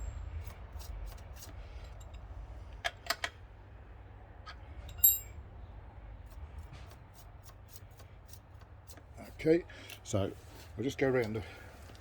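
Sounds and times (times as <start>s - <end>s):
ringing metallic clink: 4.9s - 5.4s.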